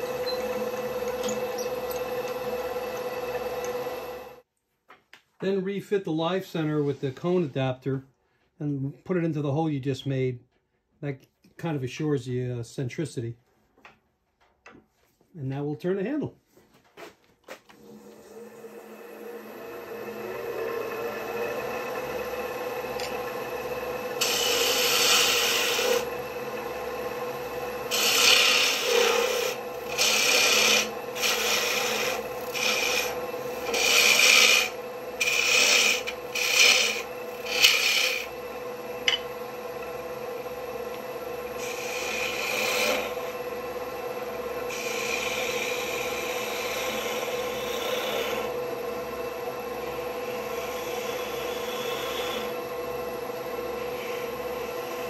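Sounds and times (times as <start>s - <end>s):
turning tool scraping wood: 0.0s - 4.4s, 19.5s - 40.1s, 40.7s - 48.8s, 49.8s - 52.7s, 53.3s - 55.0s
wood lathe humming: 0.0s - 4.5s, 17.7s - 55.0s.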